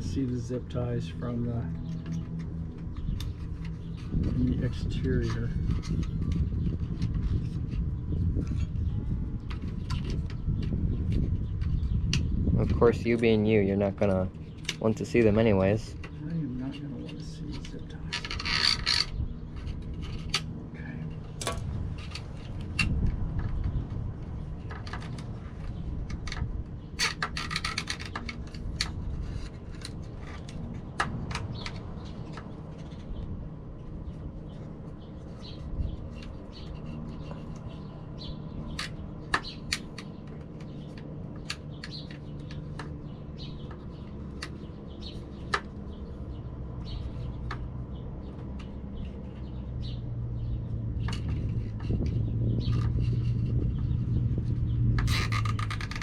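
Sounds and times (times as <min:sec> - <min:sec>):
steady low hum: 0:00.0 - 0:56.0
sharp handling clicks and taps: 0:09.4 - 0:33.3, 0:35.4 - 0:46.0, 0:46.8 - 0:49.6
zip ties ratcheting: 0:55.0 - 0:56.0.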